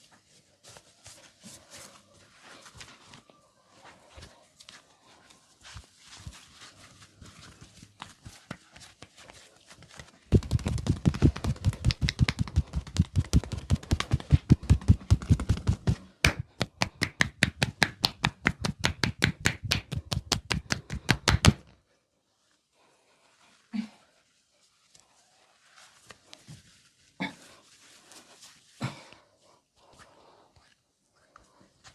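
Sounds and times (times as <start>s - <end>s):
hands rubbing and patting: 0.0s - 21.8s, 24.6s - 28.8s
hands slapping body: 8.0s - 21.8s.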